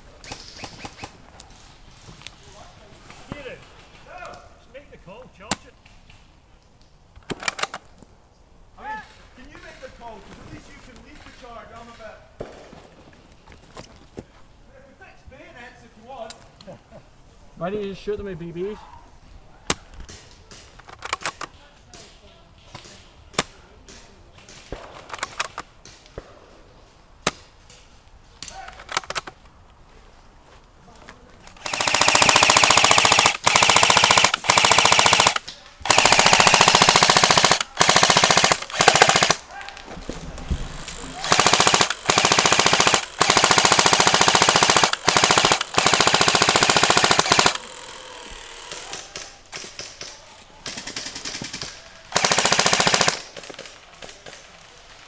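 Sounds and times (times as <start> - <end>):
airsoft gun shots: 31.6 - 39.4, 40.6 - 50.0.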